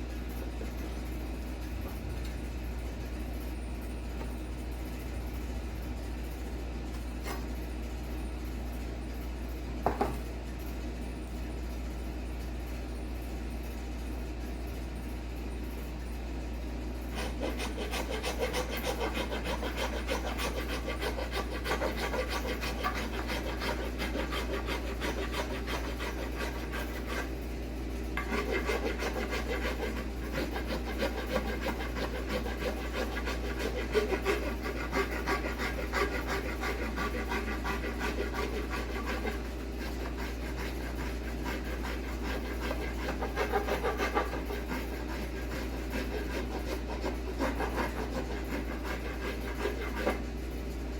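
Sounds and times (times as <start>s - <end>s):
hand tool rasping wood: 17.1s - 27.3s, 28.2s - 50.3s.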